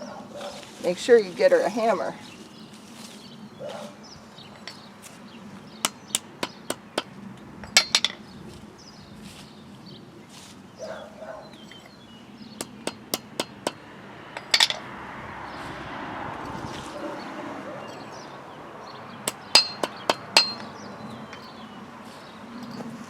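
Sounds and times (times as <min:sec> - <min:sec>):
cluster of knocks: 0:05.8 - 0:07.1, 0:12.6 - 0:13.8, 0:19.3 - 0:20.8
hammer tapping stems: 0:05.8 - 0:07.1, 0:12.6 - 0:14.9, 0:19.2 - 0:21.5.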